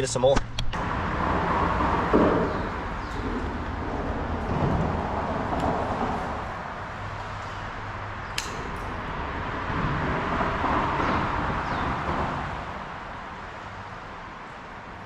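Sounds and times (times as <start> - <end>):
traffic tyre noise rushing: 0.8 - 15.0
sharp click: 8.4 - 8.9.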